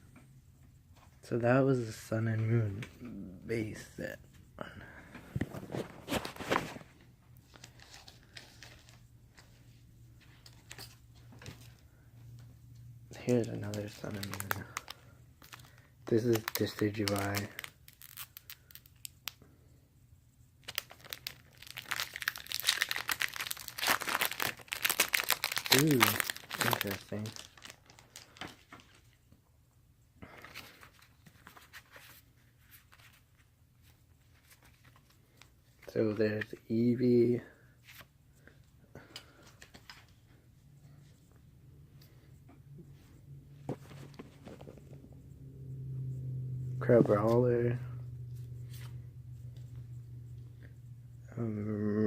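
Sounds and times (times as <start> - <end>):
low steady hum: 0.0 - 52.0
trading cards and wrapper rustling: 5.4 - 12.4, 13.1 - 19.4, 20.6 - 29.3, 30.2 - 42.4, 43.0 - 45.3, 46.8 - 50.6.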